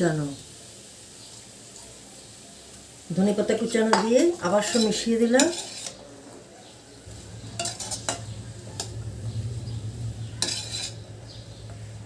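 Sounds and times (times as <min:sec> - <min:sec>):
spatula scraping a metal pan: 0:03.9 - 0:06.3, 0:07.0 - 0:12.0
steady low hum: 0:07.0 - 0:12.0.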